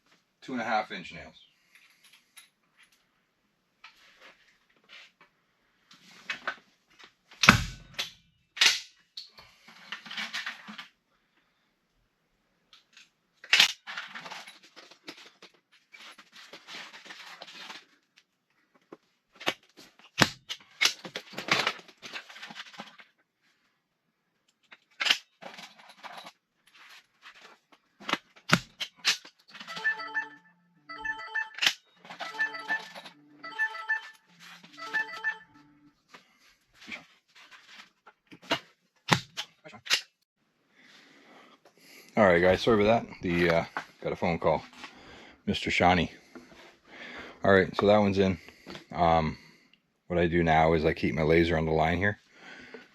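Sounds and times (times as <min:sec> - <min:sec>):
phone ringtone: 0:29.6 - 0:36.0.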